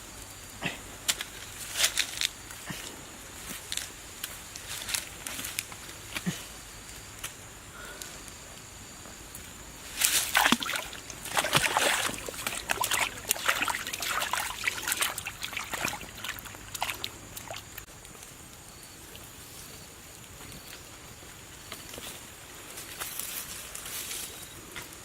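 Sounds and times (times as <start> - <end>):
water splashing and sloshing: 9.8 - 17.9.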